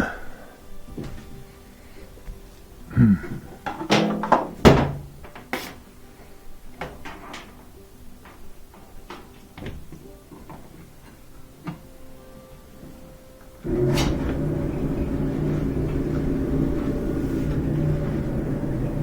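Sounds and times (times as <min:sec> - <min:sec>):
sheet-metal panels knocking: 0:03.6 - 0:05.8.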